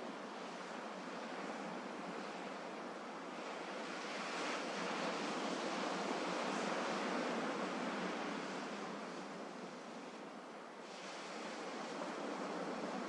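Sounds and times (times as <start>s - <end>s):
sea waves washing on shore: 0.0s - 13.0s.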